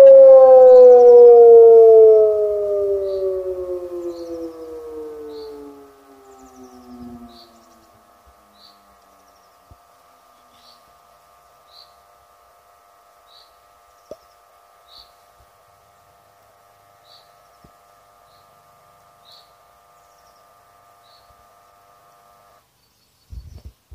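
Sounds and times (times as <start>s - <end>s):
siren loudspeakers humming chord: 0.0s - 9.0s
bird chirping: 0.0s - 9.7s.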